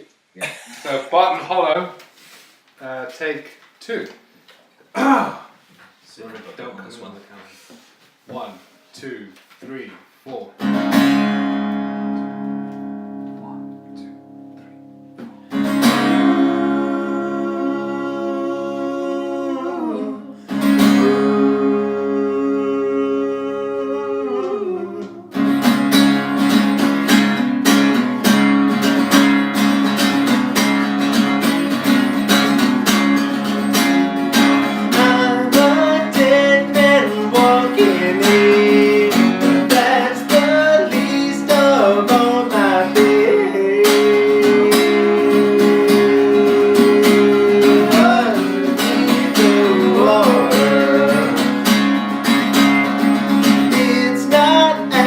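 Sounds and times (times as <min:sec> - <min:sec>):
guitar melody line: 0:10.6 - 0:17.8, 0:20.0 - 0:22.1, 0:24.5 - 0:55.0
acoustic guitars strumming: 0:10.6 - 0:55.0.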